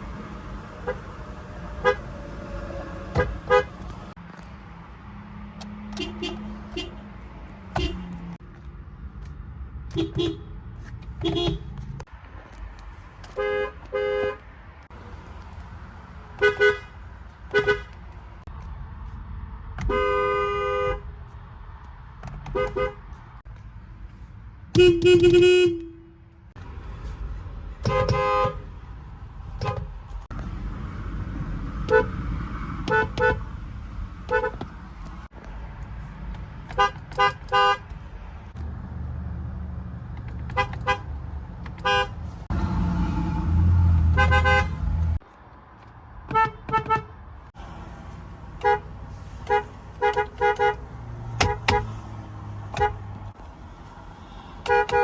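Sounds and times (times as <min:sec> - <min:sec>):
car horns honking: 0:00.8 - 0:01.2, 0:01.8 - 0:02.2, 0:03.0 - 0:03.9, 0:05.9 - 0:07.0, 0:07.7 - 0:08.2, 0:09.9 - 0:10.6, 0:11.2 - 0:11.9, 0:13.3 - 0:14.5, 0:16.4 - 0:18.0, 0:19.8 - 0:21.2, 0:22.4 - 0:23.1, 0:24.7 - 0:26.4, 0:27.8 - 0:28.8, 0:29.6 - 0:29.9, 0:31.9 - 0:32.2, 0:32.8 - 0:33.4, 0:34.3 - 0:34.7, 0:36.7 - 0:37.9, 0:40.3 - 0:45.2, 0:46.3 - 0:47.2, 0:48.6 - 0:52.0, 0:52.6 - 0:53.2, 0:54.6 - 0:55.0.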